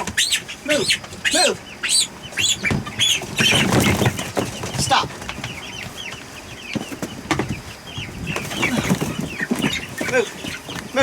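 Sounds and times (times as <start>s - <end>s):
chicks peeping: 0.0s - 11.0s
knocks and rustles: 2.6s - 11.0s.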